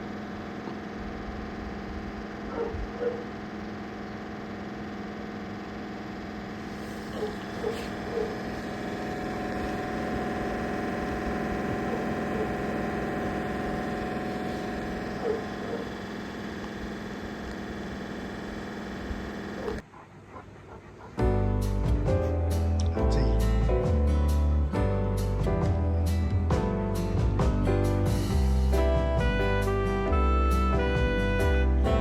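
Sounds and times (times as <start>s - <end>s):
mechanical hum: 0.0s - 20.2s
dog whining: 6.8s - 8.7s, 15.1s - 15.9s
music: 21.2s - 32.0s.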